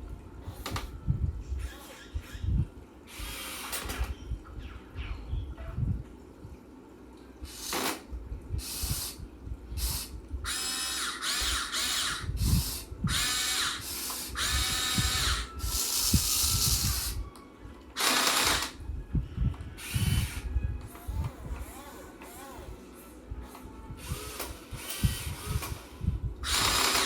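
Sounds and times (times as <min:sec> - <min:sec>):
electric motors whining in bursts: 0:03.1 - 0:04.2, 0:09.8 - 0:17.3, 0:18.0 - 0:18.8, 0:19.8 - 0:27.0.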